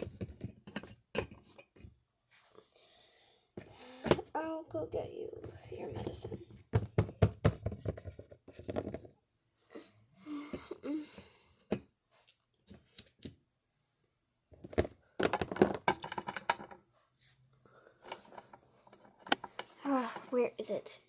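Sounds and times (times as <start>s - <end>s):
plastic toys clicking and clattering: 14.6s - 16.8s, 18.0s - 20.4s.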